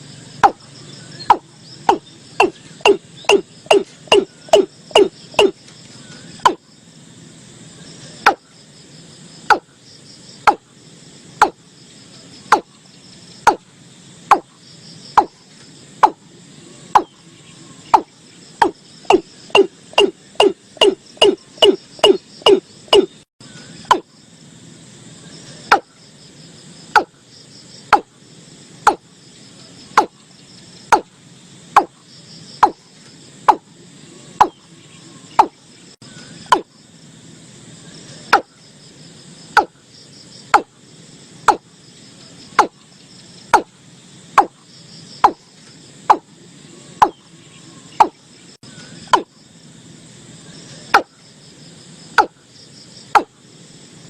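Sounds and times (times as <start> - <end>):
insects trilling: 0.0 - 54.0
bird calling sharp kok notes: 17.9 - 24.0.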